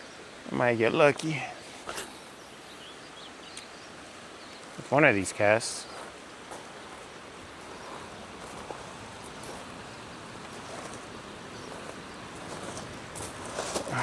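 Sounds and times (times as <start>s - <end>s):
outdoor ambient hiss: 0.0s - 14.0s.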